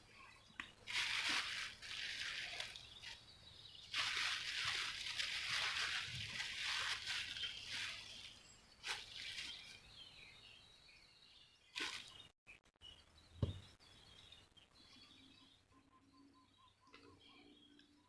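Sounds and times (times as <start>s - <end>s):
small birds chirping: 0.0s - 18.0s
dull thump: 13.4s - 13.8s.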